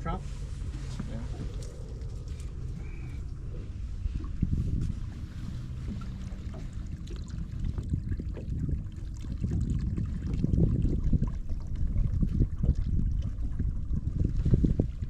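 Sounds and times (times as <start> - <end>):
water lapping on boat: 0.0 - 15.0
wind buffeting microphone: 0.0 - 15.0.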